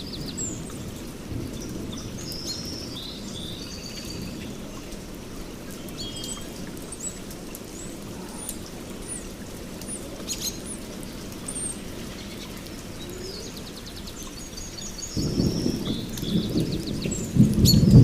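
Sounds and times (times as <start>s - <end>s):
steady rain: 0.0s - 18.0s
birds chirping: 5.7s - 18.0s.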